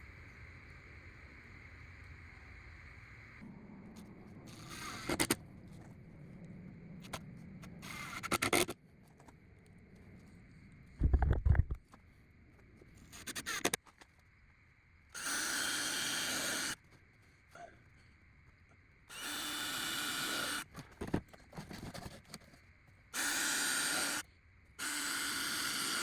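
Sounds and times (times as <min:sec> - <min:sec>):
cordless drill running: 0:19.1 - 0:20.6, 0:23.2 - 0:24.2, 0:24.8 - 0:26.0.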